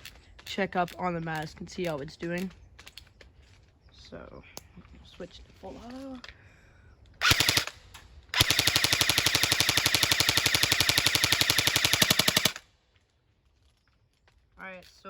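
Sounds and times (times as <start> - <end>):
airsoft gun firing bursts: 7.2 - 12.7.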